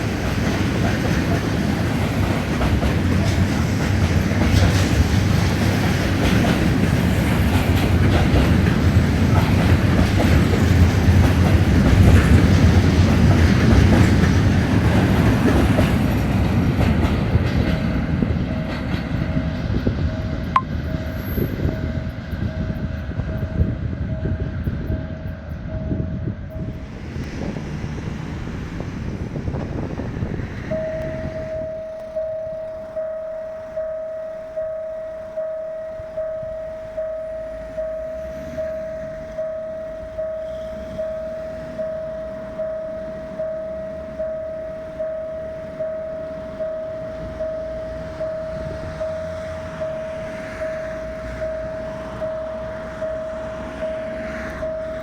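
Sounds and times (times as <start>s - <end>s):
train wheels clattering over rails: 0.0s - 21.8s
faint rapidly pulsing tone: 30.7s - 54.0s.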